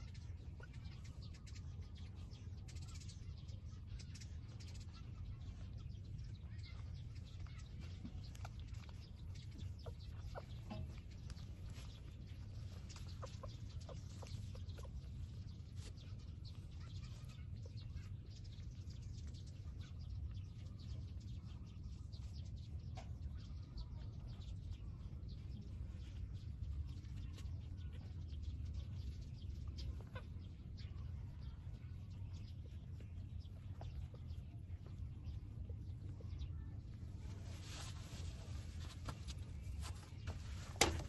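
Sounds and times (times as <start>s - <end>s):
steady low rumble: 0.0s - 40.8s
faint animal calls: 6.4s - 18.4s, 27.2s - 37.3s.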